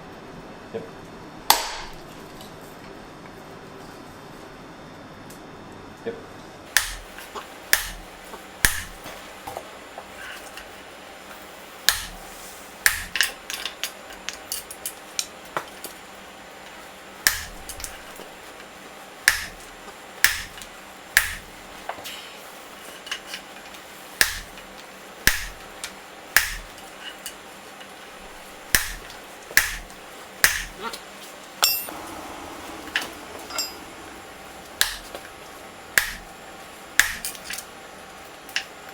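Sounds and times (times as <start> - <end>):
hammer striking hot steel: 1.5 - 2.0, 6.7 - 9.2, 11.9 - 13.7, 17.2 - 18.2, 19.2 - 21.6, 24.2 - 24.6, 25.2 - 27.4, 28.2 - 30.8, 31.6 - 37.7
metallic ring: 31.6 - 32.0, 32.9 - 34.3.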